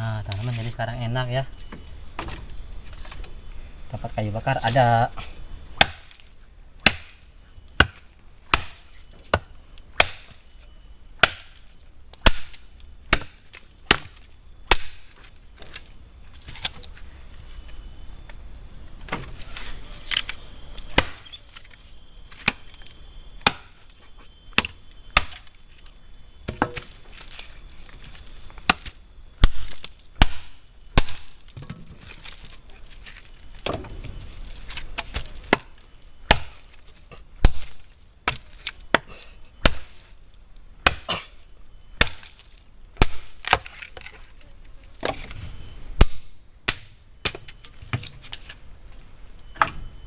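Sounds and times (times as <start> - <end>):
insects trilling: 0.0 - 50.0
blade chopping wood: 5.8 - 6.2, 6.8 - 7.2, 7.8 - 10.4, 11.2 - 11.6, 12.2 - 15.1, 20.9 - 21.3, 23.4 - 23.8, 24.5 - 25.5, 28.6 - 32.4, 34.7 - 35.7, 36.3 - 36.7, 37.4 - 40.0, 40.8 - 41.3, 42.0 - 42.4, 43.0 - 44.1, 46.0 - 47.5.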